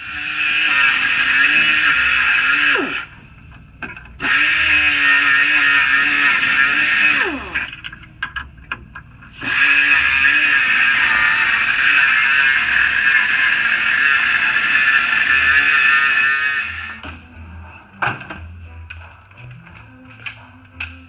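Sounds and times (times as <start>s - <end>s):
power tool spinning: 0.0s - 3.4s, 4.1s - 8.1s, 9.2s - 17.3s.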